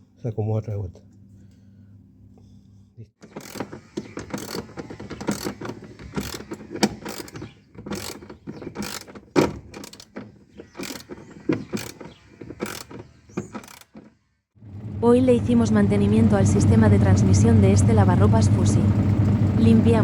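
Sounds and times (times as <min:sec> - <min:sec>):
gears clicking and clacking: 0:03.2 - 0:14.1
continuous rattle: 0:03.2 - 0:14.2.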